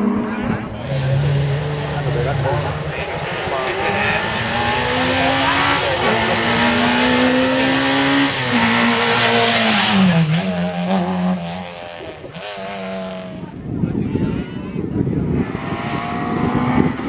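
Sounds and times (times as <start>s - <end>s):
rally car engine at full throttle: 0.0s - 17.0s.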